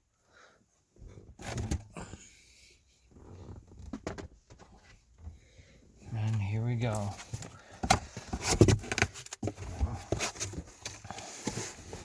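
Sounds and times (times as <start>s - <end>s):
cardboard box knocks and scrapes: 7.2s - 12.0s.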